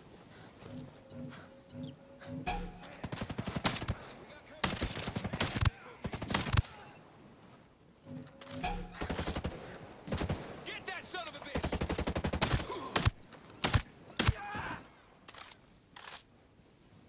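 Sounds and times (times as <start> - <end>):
rapid gunfire: 2.5 - 6.9, 9.0 - 14.5.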